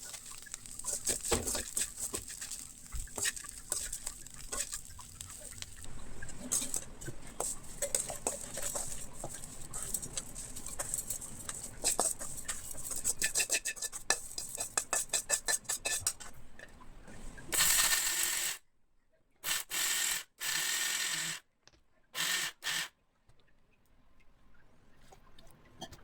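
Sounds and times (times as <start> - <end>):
mixer grinder pulses: 19.5 - 21.4, 22.2 - 22.9.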